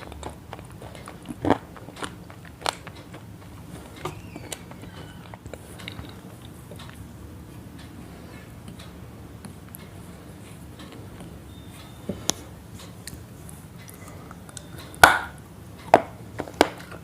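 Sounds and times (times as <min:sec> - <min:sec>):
crisp crunches and clicks: 0:00.0 - 0:07.0
faint high squeaks: 0:04.0 - 0:05.4.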